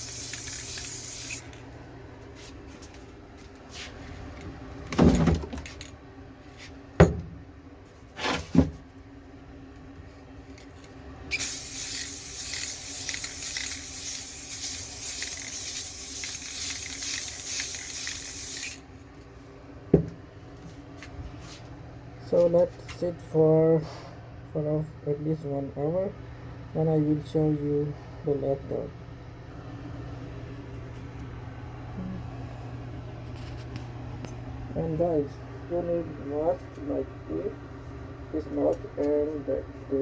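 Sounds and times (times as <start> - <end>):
aerosol can spraying hiss: 0.0 - 1.4, 11.3 - 18.8
thump: 19.9 - 20.1.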